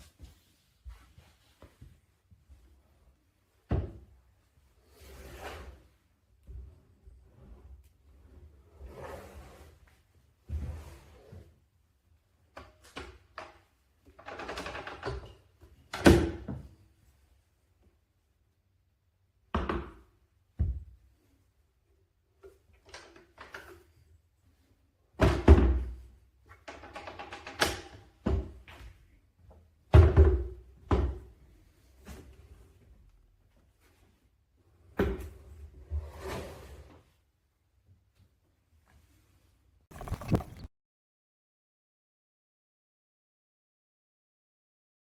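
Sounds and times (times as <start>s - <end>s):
rattling handling sounds: 39.9s - 40.7s.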